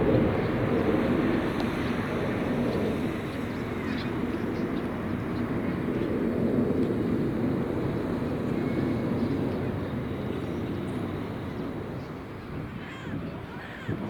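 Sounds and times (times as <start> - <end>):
jet engines passing: 0.0 - 13.8.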